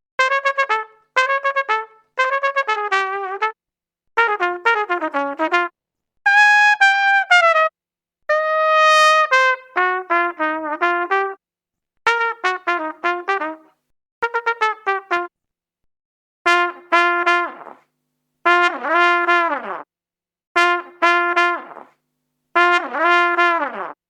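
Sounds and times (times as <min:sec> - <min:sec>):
brass horn playing notes: 0:00.2 - 0:03.6, 0:04.2 - 0:07.7, 0:08.3 - 0:11.4, 0:12.1 - 0:15.3, 0:16.5 - 0:17.8, 0:18.5 - 0:19.9, 0:20.6 - 0:21.9, 0:22.6 - 0:24.0.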